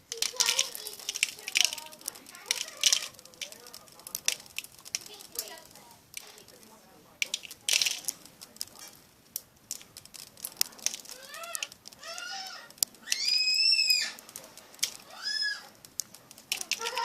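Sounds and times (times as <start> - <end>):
slime clicking and popping: 0.0 - 17.0.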